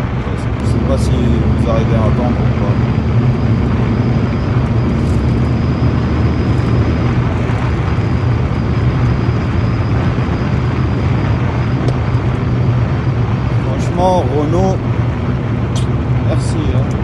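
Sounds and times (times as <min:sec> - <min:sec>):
road and wind noise in car: 0:00.0 - 0:17.0
high-pitched air whistle: 0:03.4 - 0:07.1.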